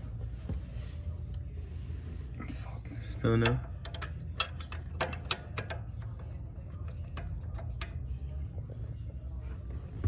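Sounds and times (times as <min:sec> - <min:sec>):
wrench metallic clicks and knocks: 0:03.4 - 0:08.0.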